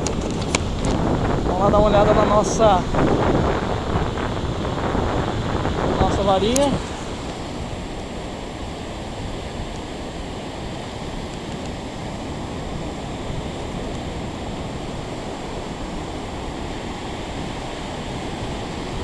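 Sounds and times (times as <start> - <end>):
ocean surf on beach: 0.0 - 19.0
wind: 0.0 - 19.0.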